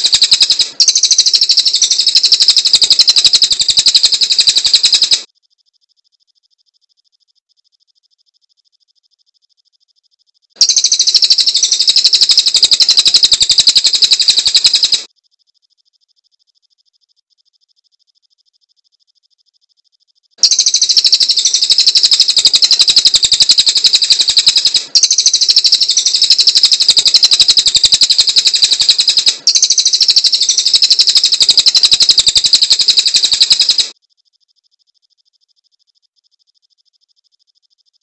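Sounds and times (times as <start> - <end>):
bird singing rapid high trill: 0.0 - 5.3, 10.6 - 15.1, 20.4 - 34.0.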